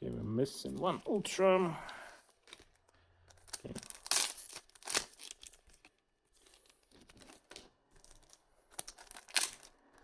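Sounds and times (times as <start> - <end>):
card pack wrapping crinkling: 2.2 - 10.0.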